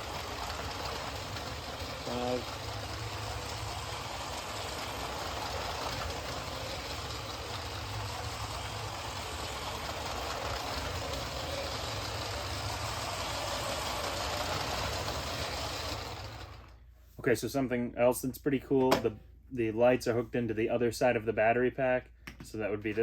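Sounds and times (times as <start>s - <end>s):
toy train motor hum: 0.0s - 16.8s
toy train rolling on track: 0.0s - 16.8s.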